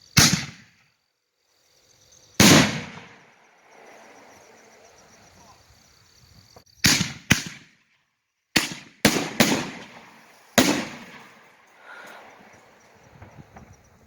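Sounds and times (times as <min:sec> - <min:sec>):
firework bangs with echoes: 0:00.2 - 0:00.8, 0:02.4 - 0:03.8, 0:06.8 - 0:07.8, 0:08.6 - 0:13.8.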